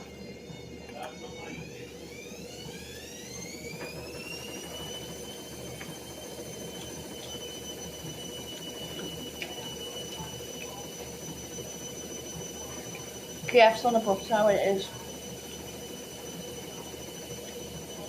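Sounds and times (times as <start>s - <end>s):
high-pitched motor whine: 0.0s - 18.0s.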